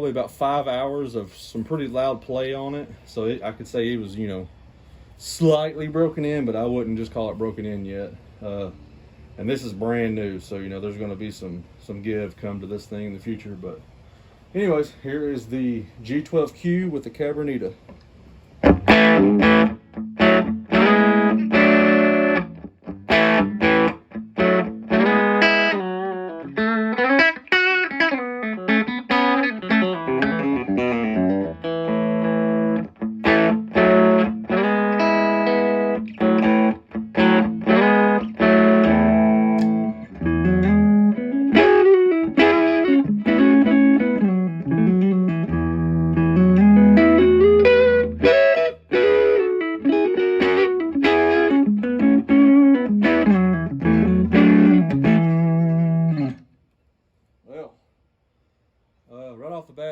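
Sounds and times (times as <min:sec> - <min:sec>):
electric guitar strumming and runs: 0:18.6 - 0:56.4.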